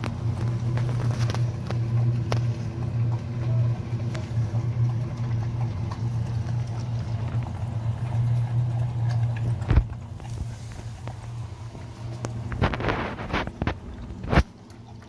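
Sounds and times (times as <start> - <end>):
sharp clicks and crunches: 0.0 - 2.5
dogs eating: 0.0 - 15.0
steady low hum: 0.0 - 15.0.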